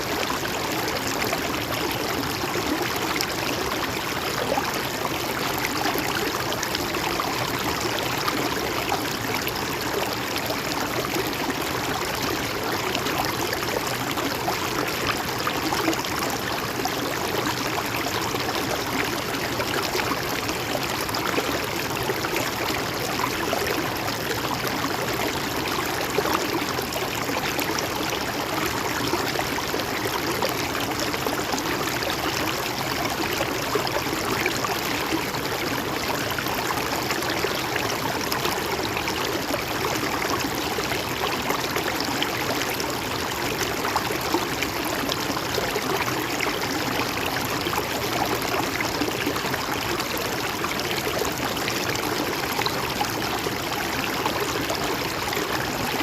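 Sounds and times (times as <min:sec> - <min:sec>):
river water flowing over rocks: 0:00.0 - 0:56.0.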